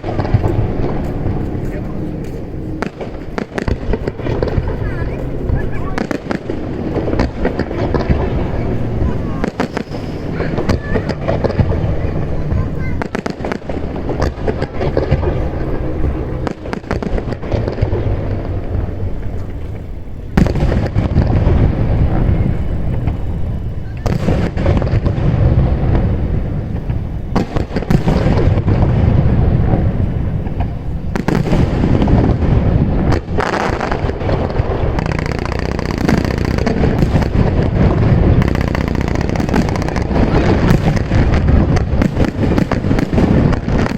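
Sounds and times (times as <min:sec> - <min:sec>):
fireworks bangs and crackles: 0:00.0 - 0:43.9
low rumble: 0:00.0 - 0:43.9.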